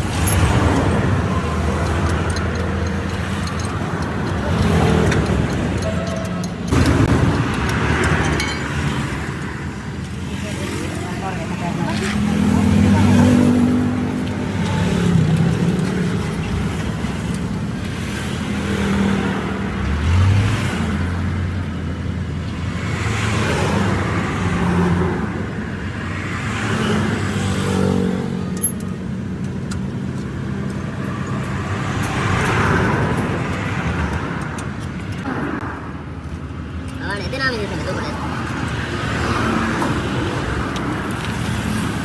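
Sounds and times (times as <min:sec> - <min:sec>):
vehicles passing close by: 0:00.0 - 0:42.0.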